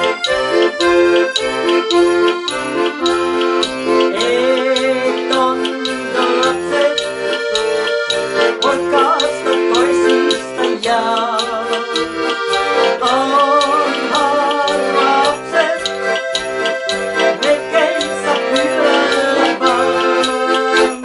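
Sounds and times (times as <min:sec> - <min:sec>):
accordion playing a polka: 0:00.0 - 0:21.0.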